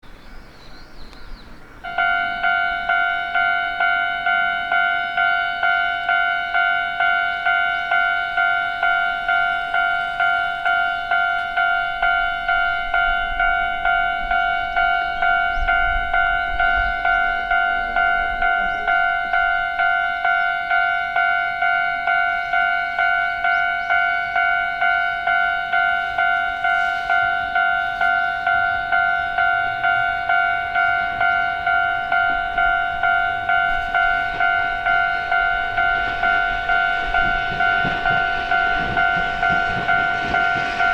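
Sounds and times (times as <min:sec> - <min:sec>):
level-crossing warning bell: 0:00.0 - 0:40.9.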